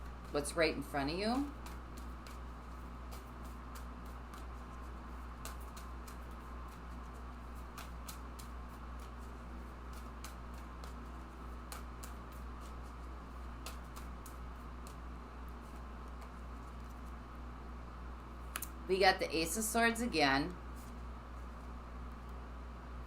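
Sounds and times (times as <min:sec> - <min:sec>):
steady low hum: 0:00.0 - 0:23.0
cards shuffled clicking: 0:01.4 - 0:15.0.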